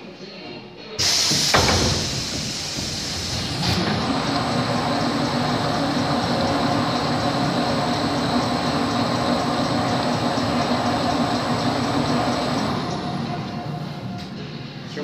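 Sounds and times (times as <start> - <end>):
paper rewinding machine whirring: 2.2 - 14.1.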